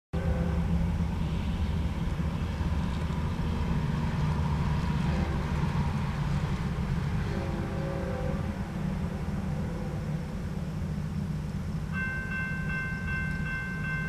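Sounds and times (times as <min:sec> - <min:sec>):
diesel locomotive rumble: 0:00.1 - 0:14.0
faint train horn: 0:00.2 - 0:02.6, 0:04.8 - 0:10.7.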